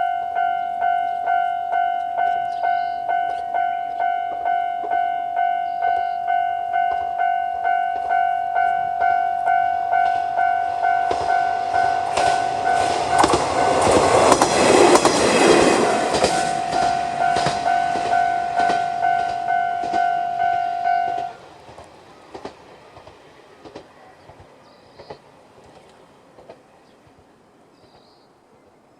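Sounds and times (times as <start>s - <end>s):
level crossing bell dinging: 0.0s - 14.0s, 16.0s - 21.4s
diesel railcar passing: 0.0s - 28.9s
wheels clicking over rail joints: 0.7s - 28.2s.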